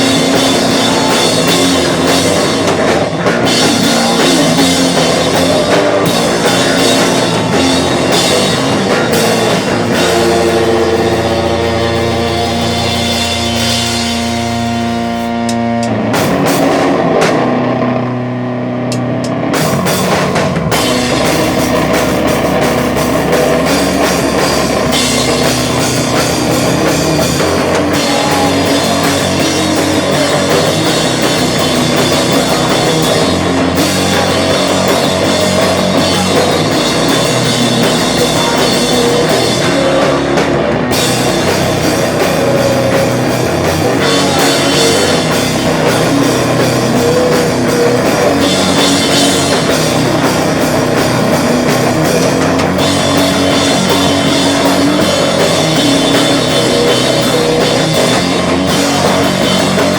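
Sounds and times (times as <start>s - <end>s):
guitar chord ringing: 0.0s - 20.1s
rock band playing live: 0.0s - 59.9s.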